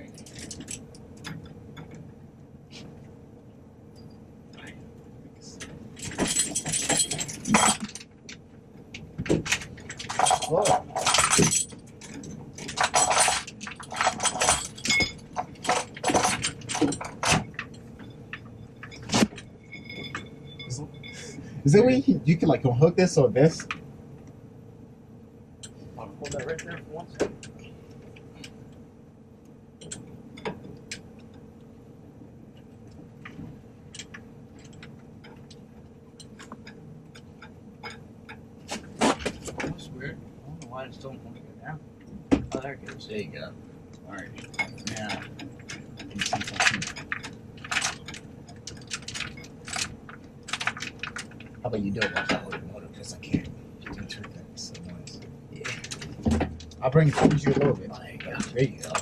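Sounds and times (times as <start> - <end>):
metal chains rattling and clinking: 0.0 - 1.5, 5.6 - 8.2, 9.4 - 22.1, 44.1 - 59.0
low steady hum: 0.0 - 59.0
chains clicking: 6.0 - 8.1, 9.9 - 17.8.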